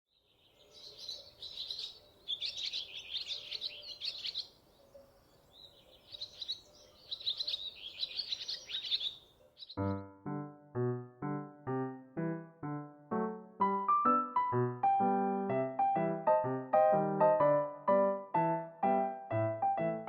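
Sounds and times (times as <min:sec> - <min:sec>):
songbird twittering: 0:00.2 - 0:10.1
electric piano notes: 0:09.8 - 0:20.0.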